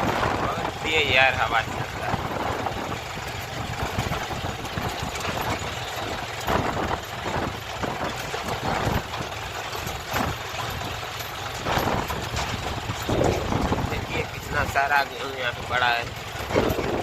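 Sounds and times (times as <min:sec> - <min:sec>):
engine running: 0:00.0 - 0:17.0
wind buffeting microphone: 0:00.0 - 0:17.0.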